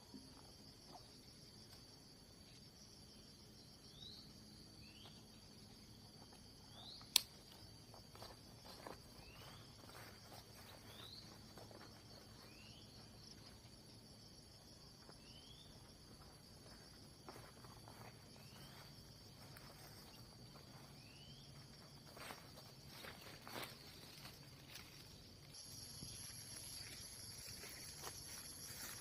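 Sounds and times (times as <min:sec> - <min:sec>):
insect chorus whine: 0:00.0 - 0:29.0.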